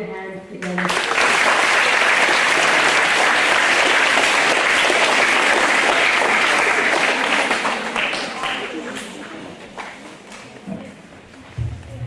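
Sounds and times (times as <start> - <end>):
children clapping: 0.6 - 10.4.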